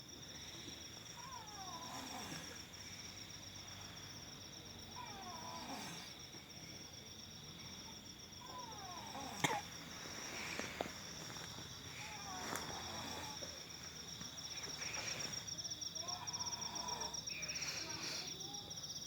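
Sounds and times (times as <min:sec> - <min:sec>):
crickets chirping: 0:00.0 - 0:19.0.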